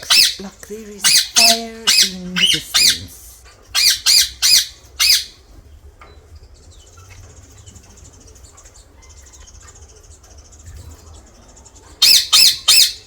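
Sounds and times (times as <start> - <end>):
faint bird chirps: 3.7 - 13.0.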